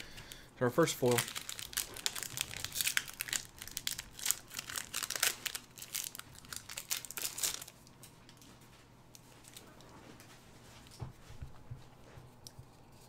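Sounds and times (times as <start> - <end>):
foil wrapper crinkling: 1.0 - 7.9.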